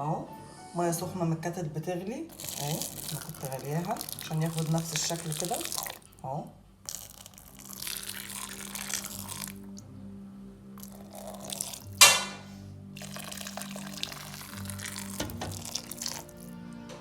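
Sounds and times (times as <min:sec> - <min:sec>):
background music: 0:00.0 - 0:17.0
water pouring into a pot: 0:02.3 - 0:06.2, 0:06.9 - 0:09.8, 0:10.8 - 0:12.2, 0:13.0 - 0:16.6.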